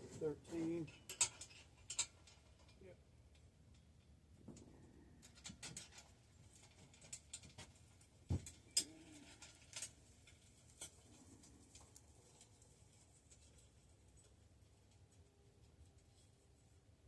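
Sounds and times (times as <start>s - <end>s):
metallic clicks of tools handled: 0.9s - 4.1s.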